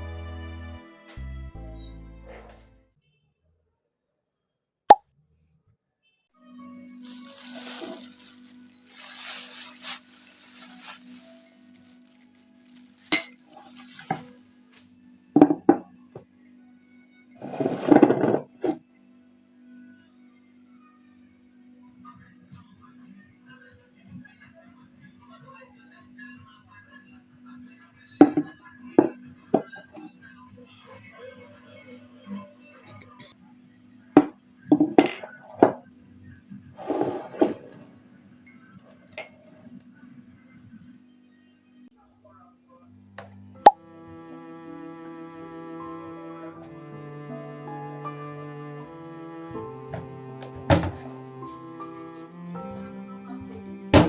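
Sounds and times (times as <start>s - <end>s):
hard objects clinking and knocking: 12.8s - 14.4s
dishes and utensils clattering: 13.1s - 14.4s, 17.4s - 18.8s, 28.2s - 30.1s, 34.2s - 35.8s, 36.8s - 37.9s.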